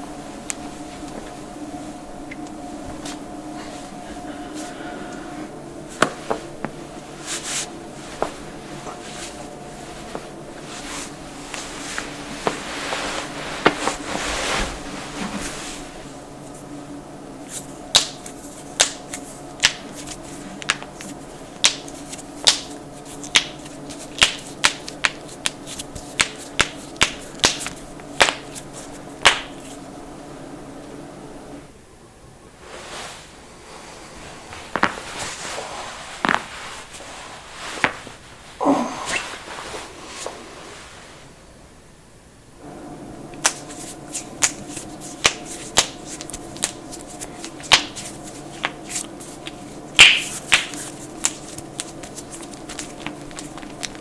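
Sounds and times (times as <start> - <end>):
skin and clothing rustling: 5.9 - 16.6, 43.5 - 54.0.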